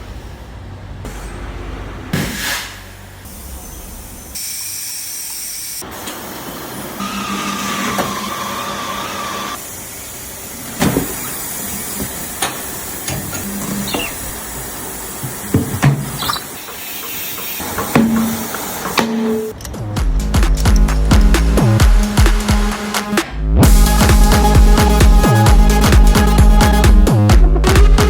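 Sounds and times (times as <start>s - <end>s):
machinery running: 5.9s - 26.6s
air hissing: 9.6s - 19.5s
sharp knocks: 17.8s - 19.5s.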